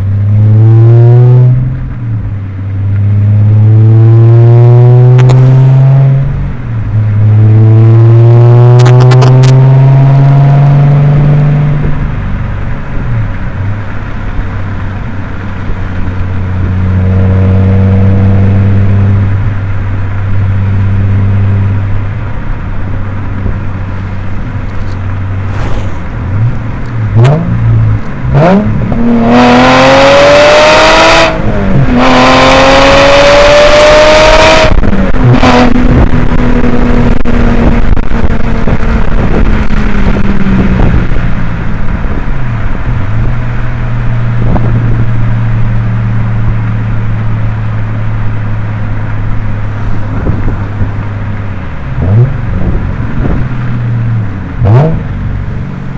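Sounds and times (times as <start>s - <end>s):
car engine revving and accelerating: 0.0s - 55.9s
wind on microphone: 23.3s - 46.8s, 49.2s - 55.7s.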